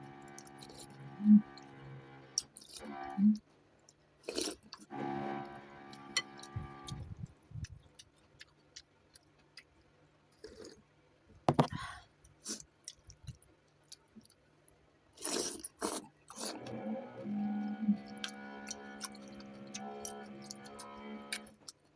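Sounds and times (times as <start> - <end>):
chewing noodles: 2.4 - 4.9, 6.4 - 10.8, 15.1 - 16.8, 17.6 - 21.9.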